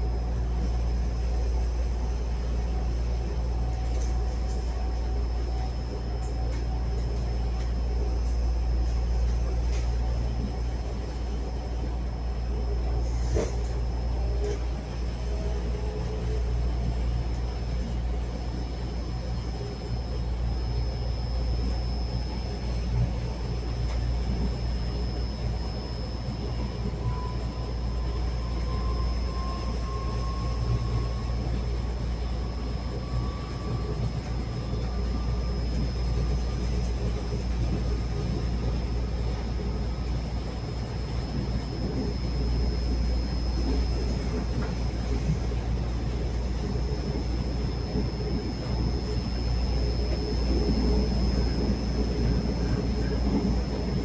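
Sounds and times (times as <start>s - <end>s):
thin high whine: 0.0s - 54.0s
train low rumble: 0.0s - 54.0s.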